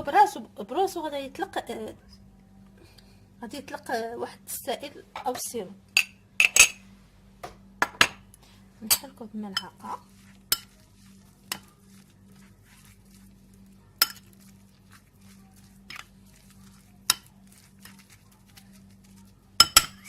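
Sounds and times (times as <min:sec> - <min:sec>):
spoon clinking against bowl: 0:06.0 - 0:06.8, 0:08.9 - 0:09.8, 0:10.5 - 0:10.8, 0:14.0 - 0:14.4, 0:17.1 - 0:17.3, 0:19.6 - 0:20.0
spoon stirring in a bowl: 0:08.8 - 0:20.0.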